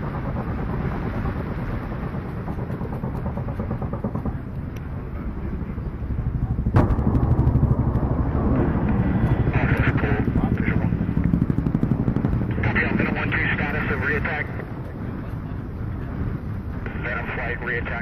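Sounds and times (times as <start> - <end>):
helicopter rotors pulsing: 0.0 - 18.0
sharp crack: 6.7 - 9.4.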